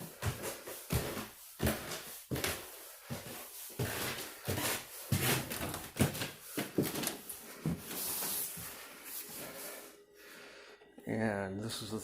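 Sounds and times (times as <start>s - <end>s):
footsteps climbing stairs: 0.0s - 8.8s.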